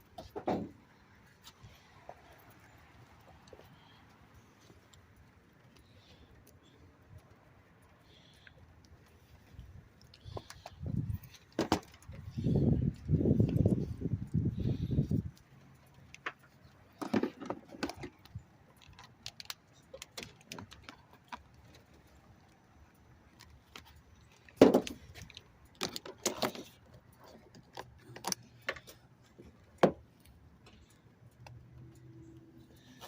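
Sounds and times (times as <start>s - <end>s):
handling clicks and knocks: 8.0s - 33.0s.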